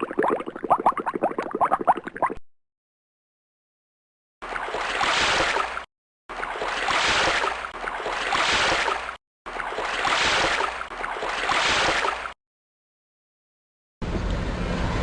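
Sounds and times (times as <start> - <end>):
water rushing and splashing: 4.5 - 12.3.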